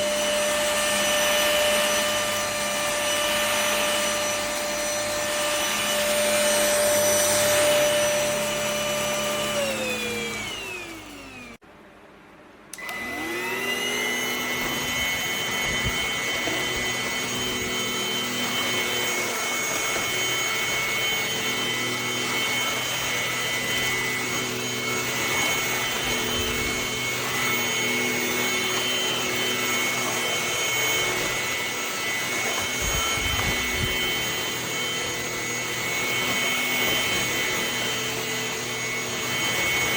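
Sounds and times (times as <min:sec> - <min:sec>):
vacuum motor whining: 0:00.0 - 0:11.6, 0:12.7 - 0:39.9.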